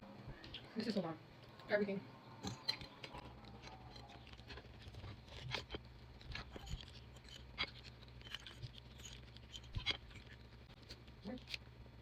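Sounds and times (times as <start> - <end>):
low steady hum: 0.0 - 12.0
quiet chewing: 2.6 - 11.6.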